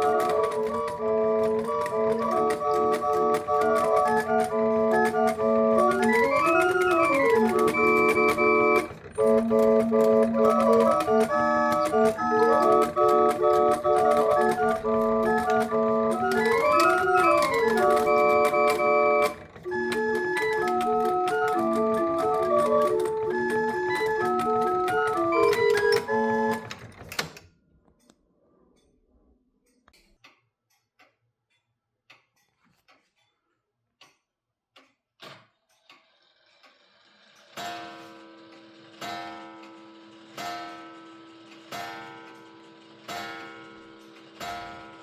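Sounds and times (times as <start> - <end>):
clock pipe organ playing tune: 0.0 - 27.0.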